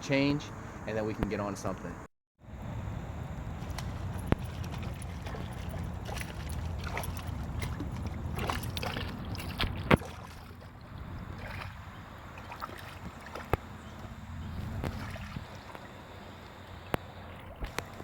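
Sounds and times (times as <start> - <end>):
wind rumble on microphone: 2.5 - 18.0
light water sounds: 3.6 - 18.0.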